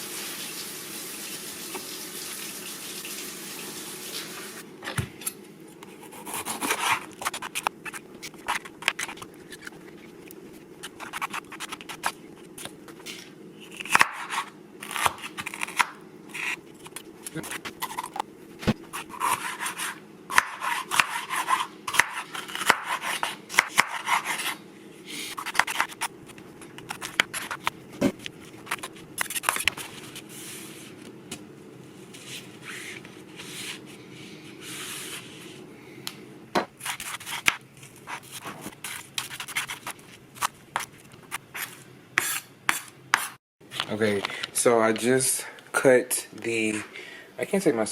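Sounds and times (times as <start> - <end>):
steady low hum: 4.6 - 47.9
scraping and rubbing: 10.8 - 14.5.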